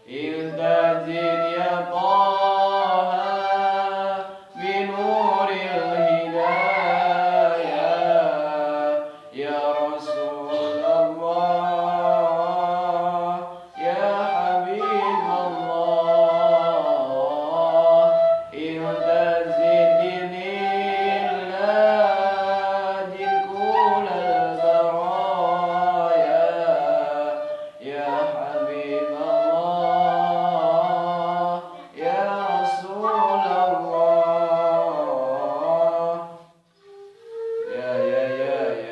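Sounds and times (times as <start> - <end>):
person singing melodic phrases: 0.0 - 35.9.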